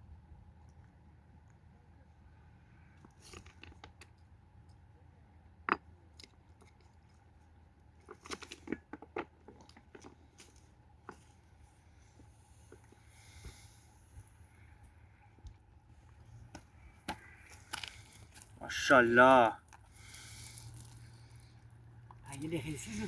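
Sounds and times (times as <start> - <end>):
low steady hum: 0.0 - 23.0
small clicks and crunches: 8.0 - 11.4.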